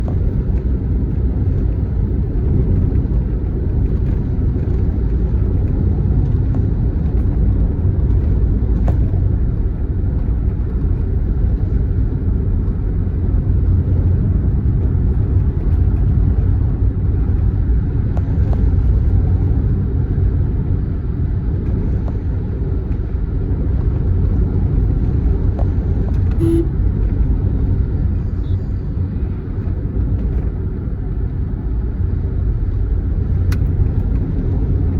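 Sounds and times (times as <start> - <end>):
moving vehicle rumble: 0.0 - 34.9
road and wind noise: 0.0 - 34.9
short tone: 26.3 - 26.8.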